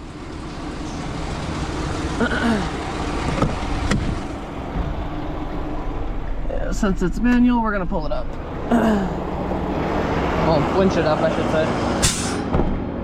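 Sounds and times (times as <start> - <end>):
vehicle engine idling: 0.0 - 9.8.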